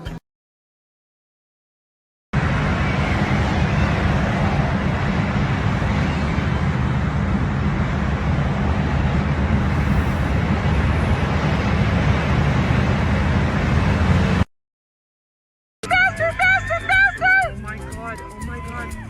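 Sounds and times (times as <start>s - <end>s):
engine running: 2.4s - 14.5s.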